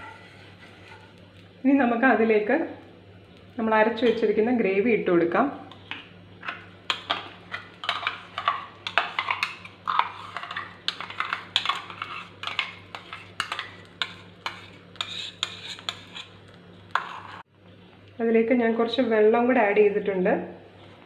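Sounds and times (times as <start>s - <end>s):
metal spoon scraping and tapping: 0.0s - 1.2s, 4.0s - 4.3s, 5.7s - 17.4s.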